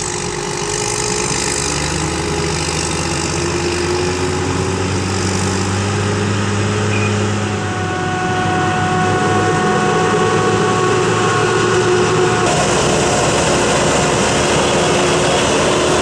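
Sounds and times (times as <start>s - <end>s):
diesel engines humming: 0.0s - 16.0s
steady high whine: 3.3s - 16.0s.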